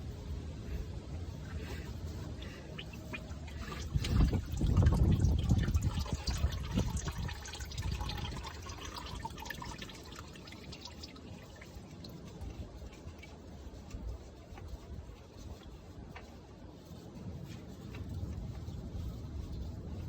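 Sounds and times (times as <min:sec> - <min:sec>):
oil pouring into a drain pan: 0:02.4 - 0:14.0.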